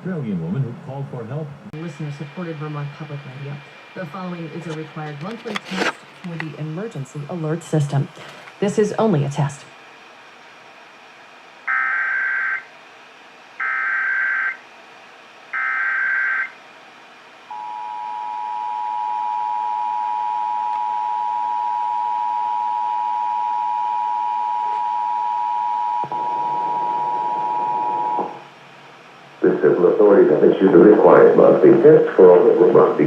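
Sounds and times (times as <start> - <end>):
screechy data tone bursts: 11.7 - 12.7, 13.6 - 14.6, 15.5 - 16.6, 17.5 - 28.5
two-tone attention signal: 17.5 - 28.5.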